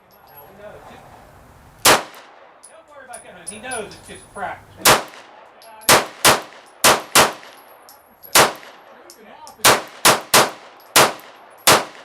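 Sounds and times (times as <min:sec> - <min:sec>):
handgun shots: 0:01.8 - 0:02.3, 0:04.8 - 0:05.3, 0:05.9 - 0:07.6, 0:08.3 - 0:08.8, 0:09.6 - 0:12.0.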